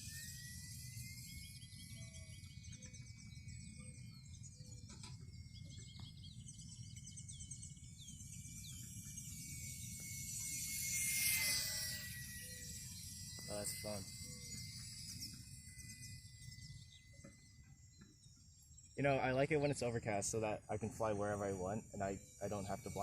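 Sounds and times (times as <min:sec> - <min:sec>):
model plane motor whine: 0:00.0 - 0:23.0
small birds chirping: 0:00.0 - 0:23.0.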